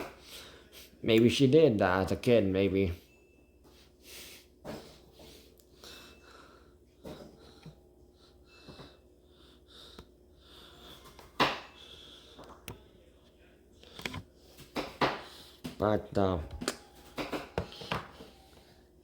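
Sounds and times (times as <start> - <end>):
person breathing and sniffing: 0.0 - 1.0, 3.7 - 12.4.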